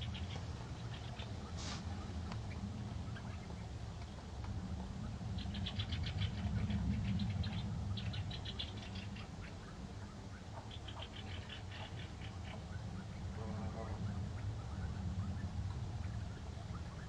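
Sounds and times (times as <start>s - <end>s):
steady low rumble: 0.0s - 17.0s
goldfinch twittering: 5.3s - 17.0s.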